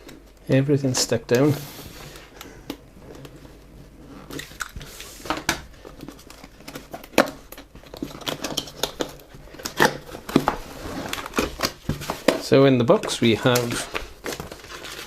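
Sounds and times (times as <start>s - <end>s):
cardboard box crinkling and tearing: 7.8s - 15.0s.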